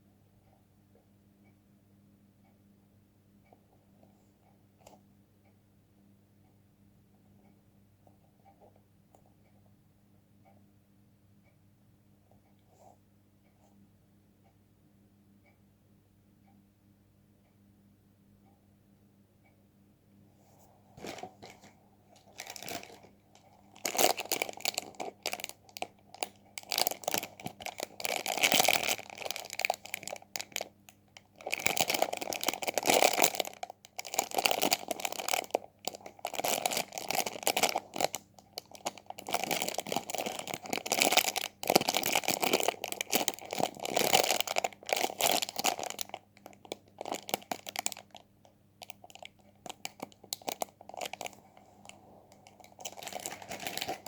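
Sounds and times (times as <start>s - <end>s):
squishy toy crinkling: 22.2s - 51.4s, 52.4s - 54.0s.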